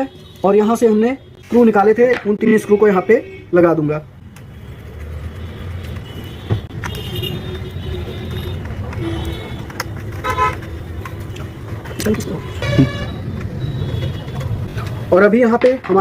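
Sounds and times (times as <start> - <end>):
traffic rumble: 0.0 - 16.0
car horns honking: 4.6 - 14.8.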